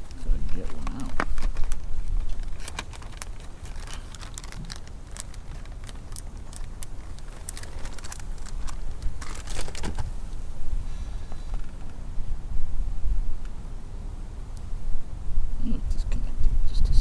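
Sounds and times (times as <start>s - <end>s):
plastic clicks and crinkles: 0.0s - 10.1s
wind rumble on microphone: 8.4s - 17.0s.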